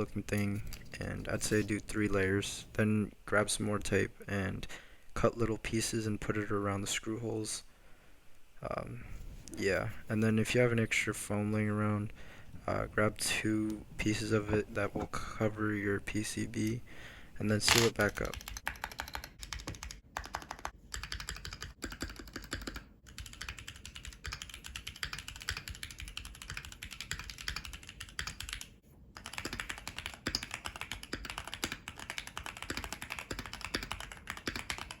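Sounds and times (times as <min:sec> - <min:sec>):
fast mechanical keyboard typing: 0:17.7 - 0:35.0.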